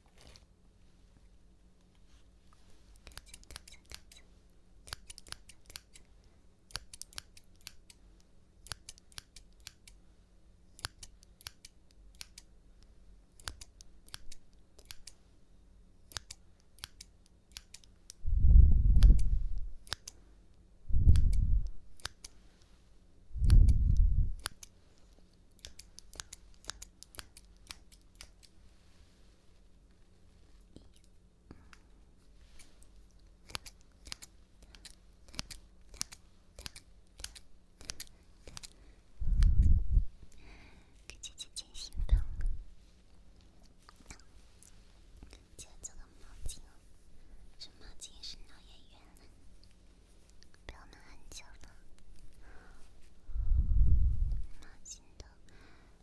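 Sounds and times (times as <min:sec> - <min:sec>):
scissors snipping: 0:03.0 - 0:04.2, 0:04.8 - 0:06.1, 0:06.7 - 0:08.0, 0:08.6 - 0:10.0, 0:10.8 - 0:12.5, 0:13.4 - 0:15.2, 0:16.1 - 0:18.2, 0:19.0 - 0:20.2, 0:21.1 - 0:22.4, 0:23.4 - 0:24.7, 0:25.6 - 0:28.6, 0:32.6 - 0:38.8
muffled low rumbles: 0:39.2 - 0:40.3, 0:41.8 - 0:42.8.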